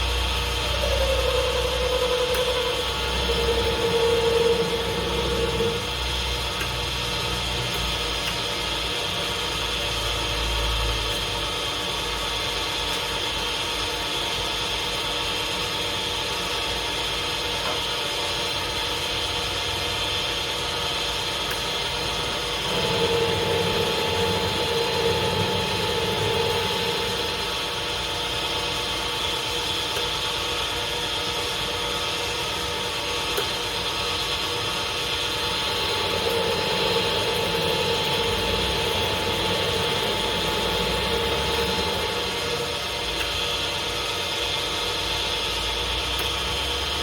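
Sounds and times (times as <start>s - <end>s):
steady mid-pitched tone: 0.0s - 6.0s, 22.2s - 28.0s
lathe motor humming: 0.0s - 11.8s, 21.6s - 30.3s, 32.8s - 45.3s.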